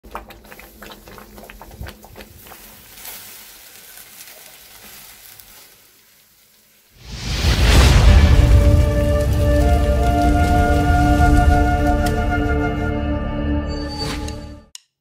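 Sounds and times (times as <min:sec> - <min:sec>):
grill hissing: 0:02.6 - 0:11.9
wood fire crackling and popping: 0:07.0 - 0:12.9.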